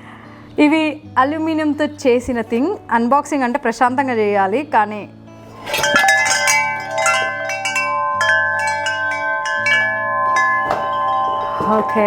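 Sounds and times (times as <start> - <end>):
metal wind chime ringing: 5.5 - 12.0.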